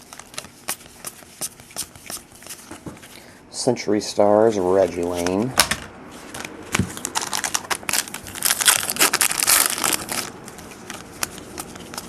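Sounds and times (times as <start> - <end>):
wrapper crinkling: 6.2 - 12.0.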